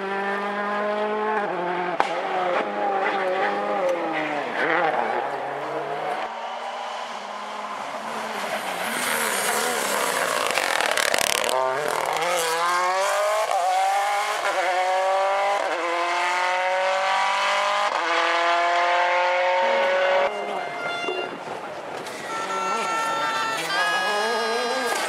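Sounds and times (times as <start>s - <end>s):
rally car engine passing: 0.0s - 21.9s
tyre noise: 8.0s - 13.8s.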